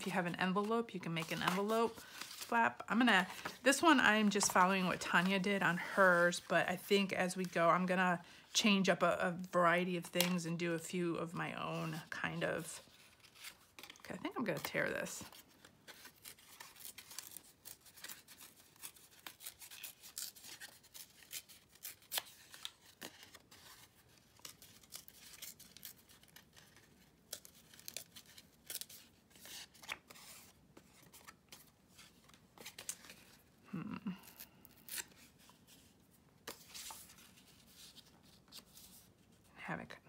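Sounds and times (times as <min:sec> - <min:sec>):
paper tearing: 0:15.9 - 0:30.5, 0:34.2 - 0:35.3.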